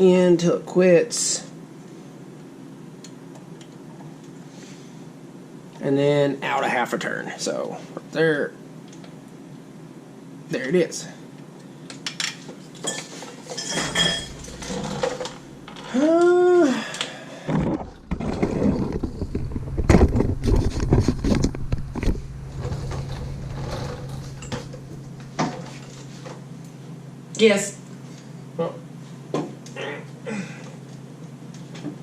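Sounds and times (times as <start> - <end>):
metal tools clinking on brake parts: 12.8 - 15.4.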